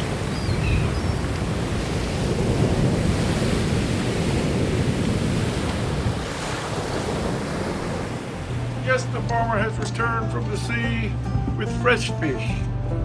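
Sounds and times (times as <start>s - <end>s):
wind buffeting microphone: 0.0s - 9.9s
sea surf rushing: 0.0s - 12.6s.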